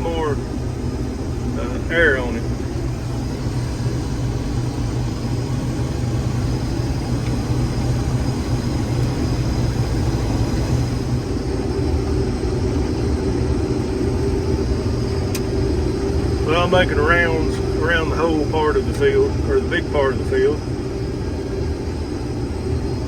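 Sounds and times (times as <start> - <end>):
combine harvester droning: 0.0 - 23.0
steady machine whine: 0.0 - 23.0.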